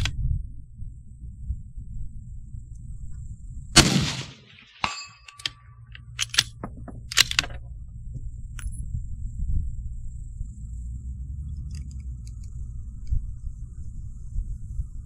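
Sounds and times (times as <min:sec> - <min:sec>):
rifle shot: 0:03.8 - 0:05.6
bullet ringing on steel target: 0:04.2 - 0:05.9.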